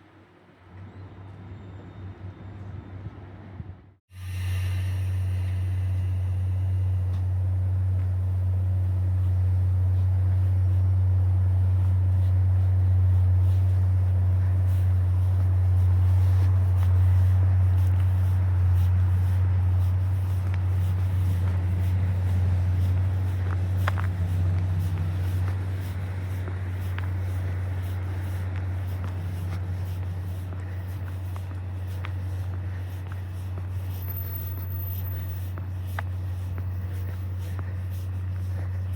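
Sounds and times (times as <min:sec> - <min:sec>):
loud low engine drone: 0:04.2 - 0:34.0.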